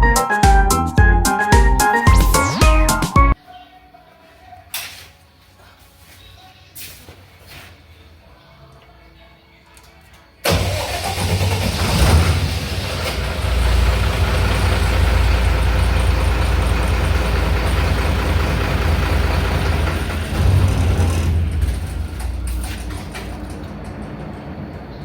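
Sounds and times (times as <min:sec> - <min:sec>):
diesel generator engine: 0:10.5 - 0:25.0.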